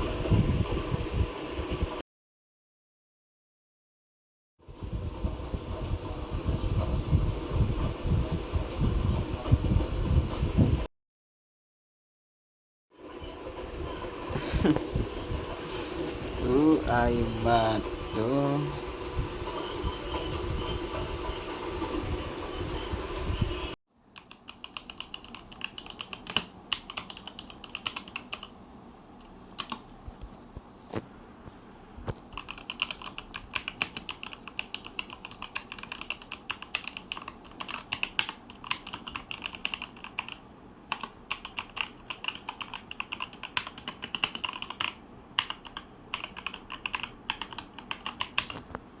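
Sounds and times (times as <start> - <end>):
mechanical keyboard typing: 24.2 - 28.5, 29.6 - 29.9, 32.2 - 48.7.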